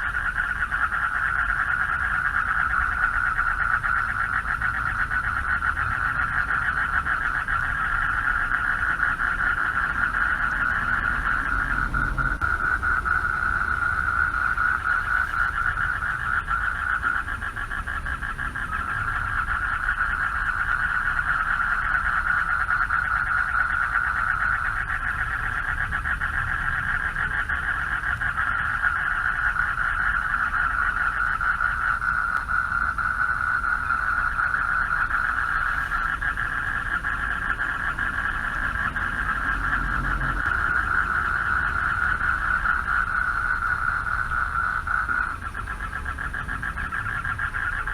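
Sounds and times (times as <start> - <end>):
frogs trilling chorus: 0.0 - 47.9
low rumble: 9.2 - 16.4.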